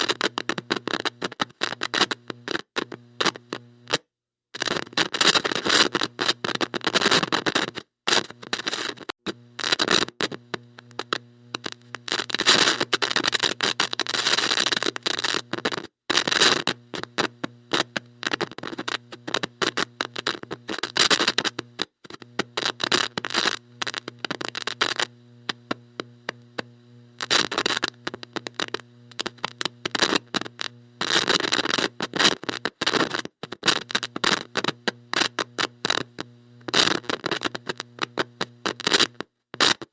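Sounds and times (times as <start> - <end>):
harsh static crackling: 0.0 - 39.9
steady electrical hum: 10.4 - 15.6, 16.7 - 32.8, 33.9 - 38.9.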